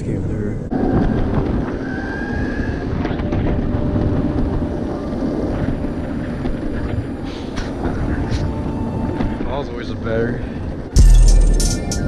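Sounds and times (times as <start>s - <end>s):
high rising whine: 11.0s - 12.0s.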